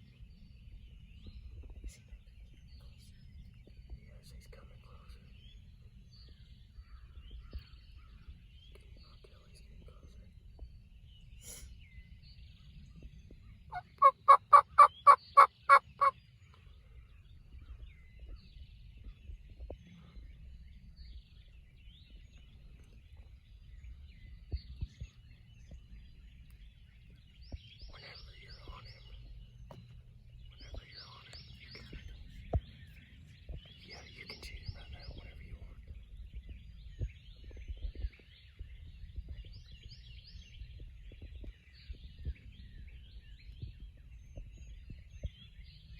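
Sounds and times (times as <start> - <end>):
small birds chirping: 0.0 - 45.9
turkey calling: 13.7 - 16.1.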